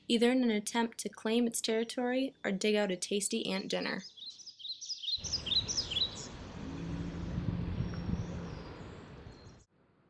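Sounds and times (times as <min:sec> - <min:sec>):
high bird chirps: 0:04.0 - 0:06.4.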